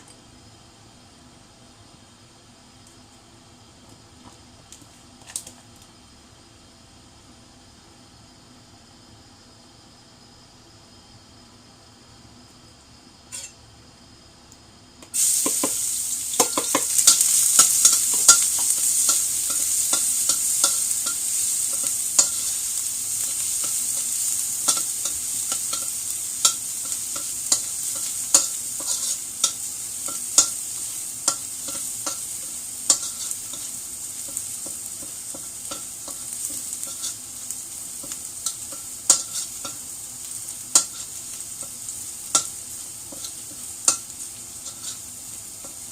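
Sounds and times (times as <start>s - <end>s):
garlic sizzling in hot oil: 12.8s - 14.1s, 15.0s - 45.9s
spatula scraping pan: 16.4s - 37.3s, 38.0s - 39.8s, 43.1s - 45.9s.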